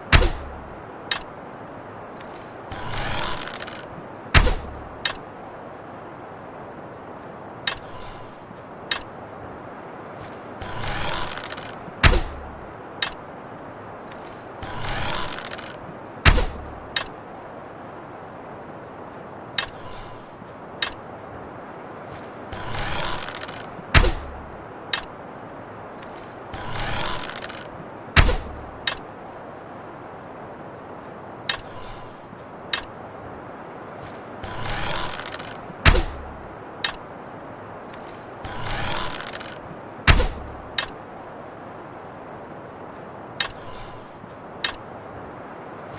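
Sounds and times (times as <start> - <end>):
bow being drawn rasping: 2.2 - 4.7, 7.7 - 8.4, 10.6 - 12.4, 14.2 - 16.7, 22.5 - 24.3, 26.1 - 28.6, 31.5 - 32.2, 34.4 - 36.4, 38.0 - 40.5, 43.4 - 44.1
small clicks: 8.9 - 9.1
bow shot snap and thump: 40.1 - 40.5.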